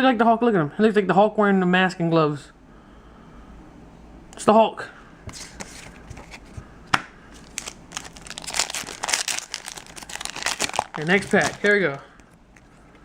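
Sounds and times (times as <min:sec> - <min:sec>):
foil wrapper crinkling: 0:07.3 - 0:13.0.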